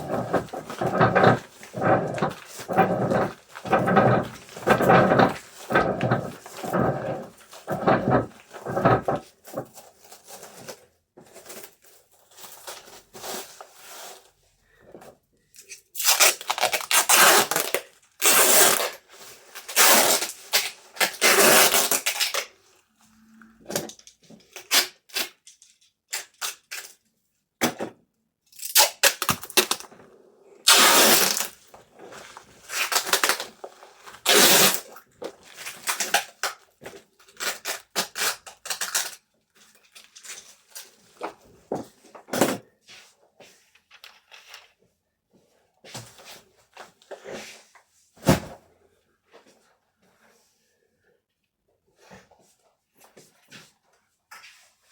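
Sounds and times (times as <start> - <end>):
packaging clicks and rustling: 0.0 - 10.8, 28.7 - 29.9
packaging tearing and crinkling: 16.0 - 19.0, 19.7 - 22.5, 28.6 - 29.9, 30.7 - 31.6, 32.6 - 36.6, 37.3 - 39.2.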